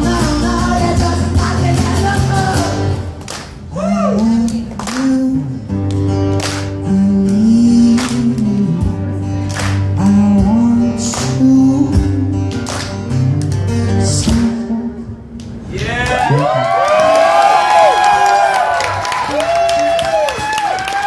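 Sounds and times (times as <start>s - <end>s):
person singing: 0.0s - 3.0s
bass: 0.0s - 21.0s
strummed acoustic guitar: 5.0s - 14.8s.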